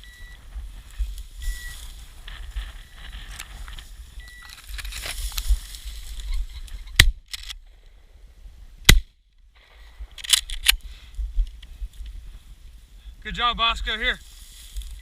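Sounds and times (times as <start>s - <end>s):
small clicks and rustles: 0.8s - 8.0s, 9.6s - 12.2s.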